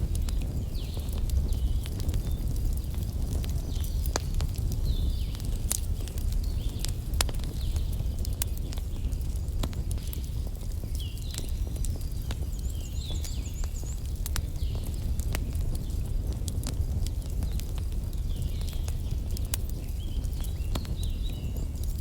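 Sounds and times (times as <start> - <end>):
fire popping and snapping: 0.0 - 22.0
wood fire crackling: 0.0 - 22.0.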